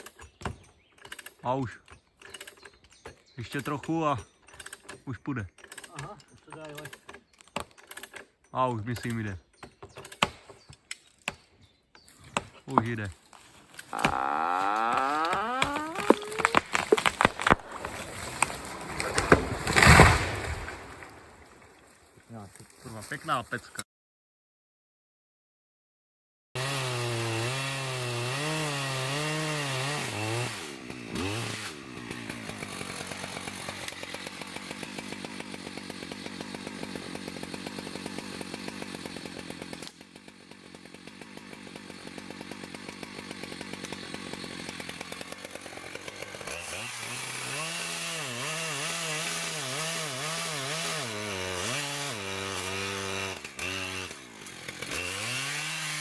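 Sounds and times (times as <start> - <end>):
chainsaw revving: 13.6 - 20.9, 26.6 - 56.0.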